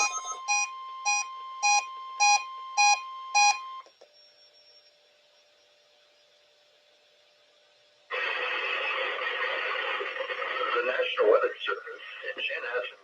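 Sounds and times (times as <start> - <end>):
electronic beep: 0.0 - 3.8
steady high alarm tone: 0.0 - 5.7
faint hum and hiss: 0.0 - 13.0.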